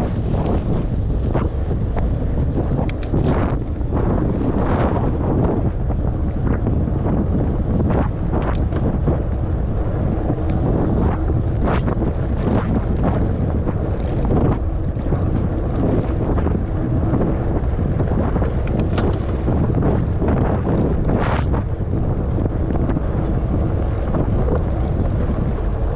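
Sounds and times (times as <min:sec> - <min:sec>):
wind buffeting microphone: 0:00.0 - 0:25.9
bike knocks and rattles: 0:05.4 - 0:25.6.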